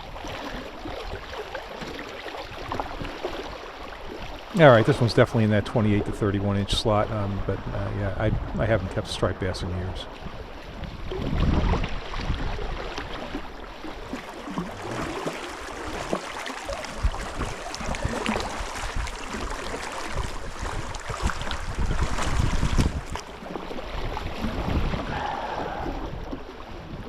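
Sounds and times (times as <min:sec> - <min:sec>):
water sloshing and splashing: 0:00.0 - 0:27.0
water dripping: 0:14.5 - 0:23.3.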